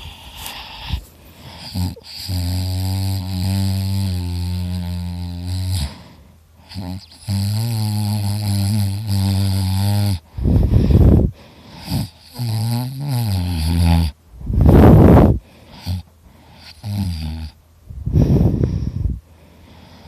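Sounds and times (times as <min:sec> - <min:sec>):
person snoring loudly: 0:00.0 - 0:06.0, 0:06.7 - 0:19.2.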